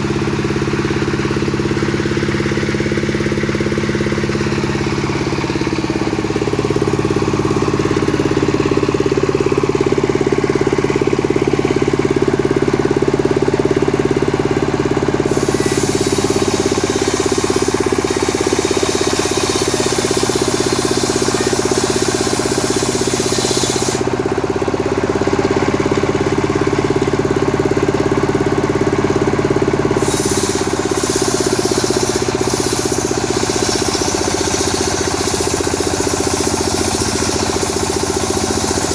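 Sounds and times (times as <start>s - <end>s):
chainsaw sawing wood: 0.0s - 38.9s
hissing noise: 15.3s - 24.1s, 30.0s - 38.9s.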